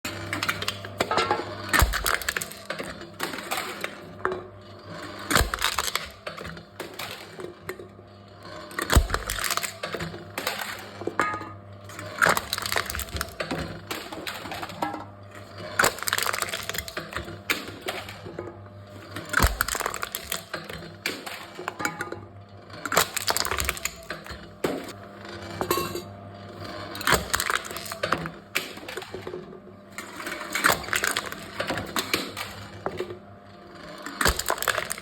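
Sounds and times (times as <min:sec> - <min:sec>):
cans being crushed: 0:00.4 - 0:02.9, 0:05.3 - 0:06.2, 0:08.8 - 0:10.0, 0:12.0 - 0:13.5, 0:15.8 - 0:17.1, 0:19.3 - 0:20.5, 0:22.9 - 0:24.8, 0:27.0 - 0:28.7, 0:34.1 - 0:35.0.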